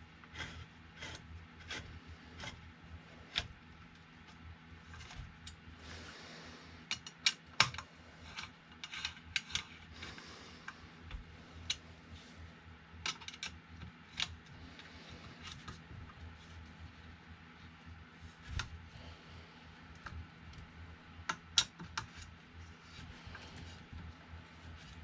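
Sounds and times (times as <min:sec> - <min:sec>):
small parts clicking and tapping: 0:03.3 - 0:05.6, 0:06.8 - 0:11.8, 0:13.0 - 0:16.6, 0:19.9 - 0:22.3.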